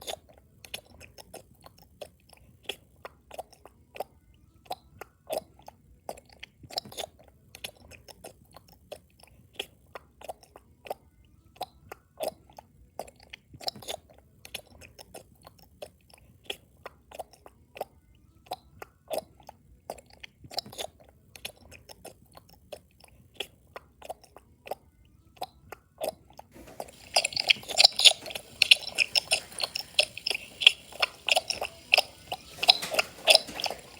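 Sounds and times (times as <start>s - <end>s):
loud wet chewing: 26.0s - 33.9s
crunching: 26.6s - 33.9s.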